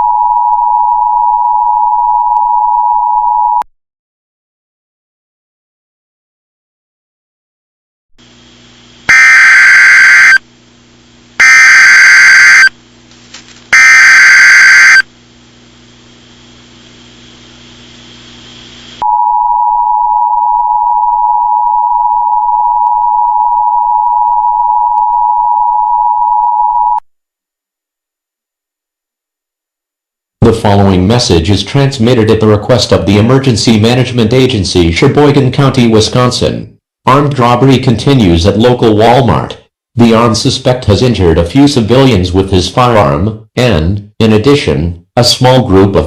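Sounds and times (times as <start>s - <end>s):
steady two-tone attention signal: 9.1s - 10.4s, 11.4s - 12.7s, 13.8s - 15.0s.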